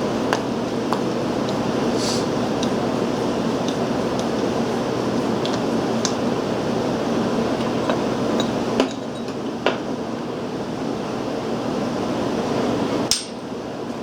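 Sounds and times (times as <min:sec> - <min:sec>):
fan-like hum: 0:00.0 - 0:14.0.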